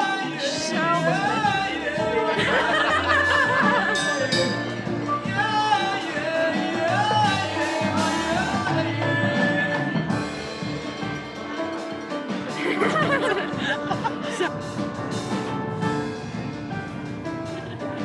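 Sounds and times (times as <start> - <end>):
person singing: 0.0 - 10.6.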